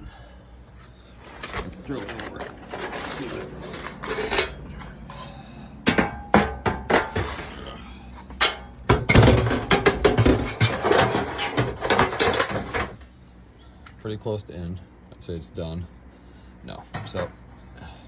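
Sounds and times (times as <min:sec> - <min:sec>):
sheet metal clanking: 0:01.2 - 0:07.7, 0:08.3 - 0:13.0.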